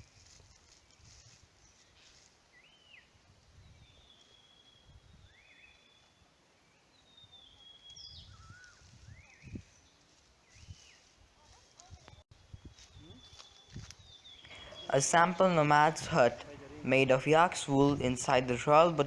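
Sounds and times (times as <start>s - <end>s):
thin falling bird whistles: 7.8s - 9.6s.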